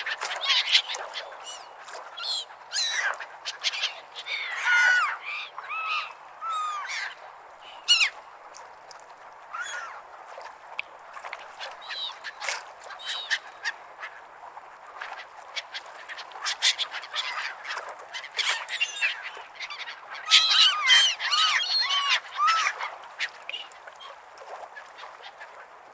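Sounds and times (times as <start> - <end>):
gulls calling and squawking: 0.3 - 8.2, 9.5 - 10.0, 18.2 - 24.2.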